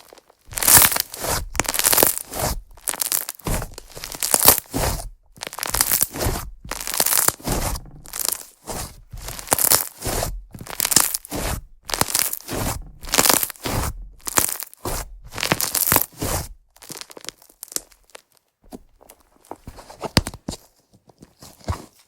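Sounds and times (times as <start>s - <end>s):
slime squishing and crackling: 0.0s - 20.5s.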